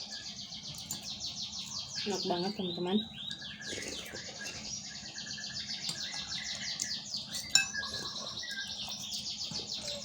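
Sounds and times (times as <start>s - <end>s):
bird trilling and whistling: 3.0s - 10.0s.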